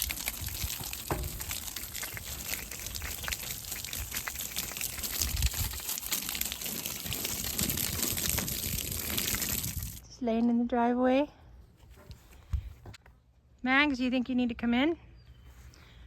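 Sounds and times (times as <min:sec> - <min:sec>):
water splashing onto soil: 0:00.0 - 0:10.0.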